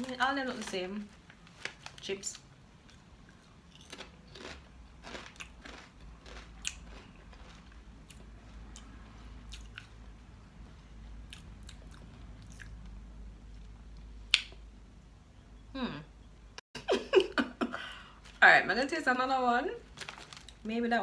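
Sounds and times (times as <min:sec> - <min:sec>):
crunching potato sticks: 0:01.5 - 0:08.9, 0:09.5 - 0:10.0, 0:11.3 - 0:14.6, 0:19.9 - 0:20.7.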